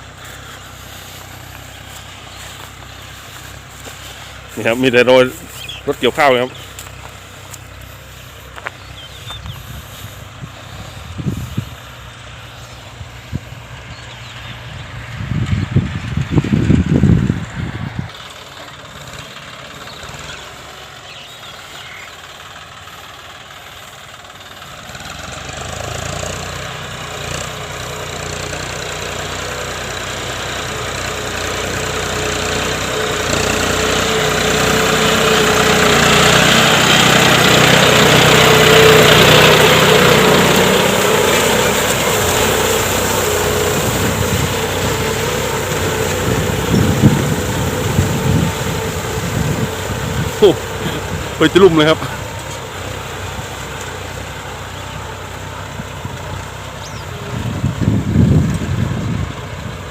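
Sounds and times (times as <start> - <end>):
tractor diesel engine: 0.0 - 59.9.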